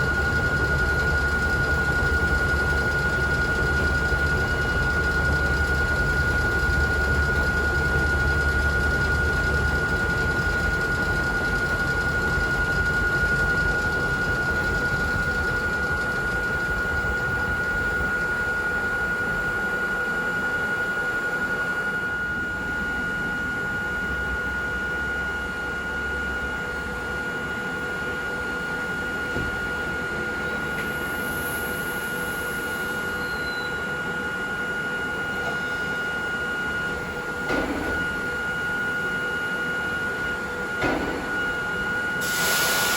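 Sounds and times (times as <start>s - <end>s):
high-pitched machinery whine: 0.0s - 42.9s.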